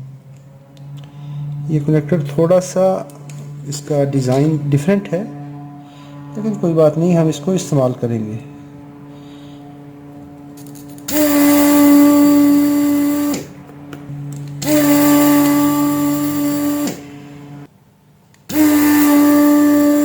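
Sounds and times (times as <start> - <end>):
small electric tool motor humming: 0.8 - 17.7, 18.5 - 20.0.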